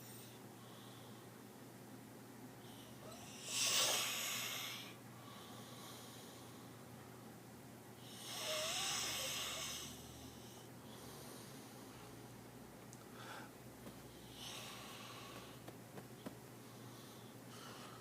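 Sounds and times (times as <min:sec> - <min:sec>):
faint breaths: 0:00.0 - 0:01.5, 0:02.6 - 0:07.0, 0:08.0 - 0:12.4, 0:13.0 - 0:18.0
person snoring loudly: 0:08.2 - 0:10.1.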